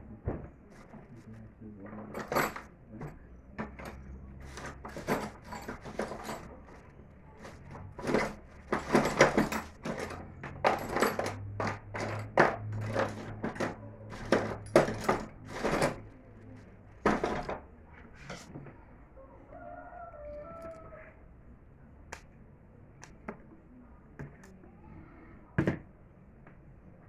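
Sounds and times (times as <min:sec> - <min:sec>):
knocks and clicks of fan parts: 0:07.4 - 0:16.1.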